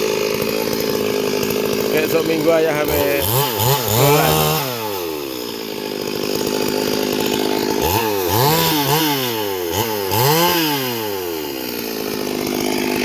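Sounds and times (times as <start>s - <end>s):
chainsaw idling and revving: 0.0s - 13.0s.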